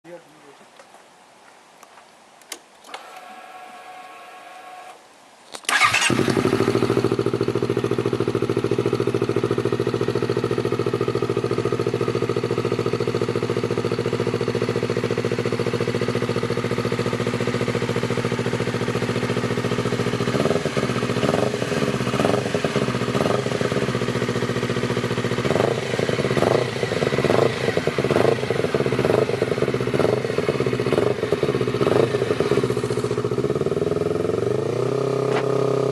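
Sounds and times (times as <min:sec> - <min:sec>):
motorcycle engine idling: 0:05.7 - 0:35.9
motorcycle throttle revving: 0:05.7 - 0:35.9.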